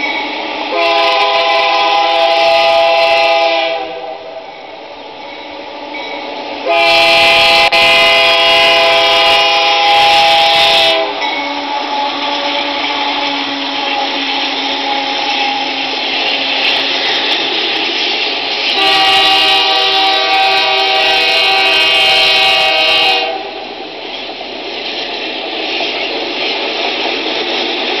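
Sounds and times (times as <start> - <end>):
model locomotive horn blasts: 0.1 - 4.6, 6.6 - 16.0, 18.7 - 23.6
locomotive engine running: 4.4 - 22.0.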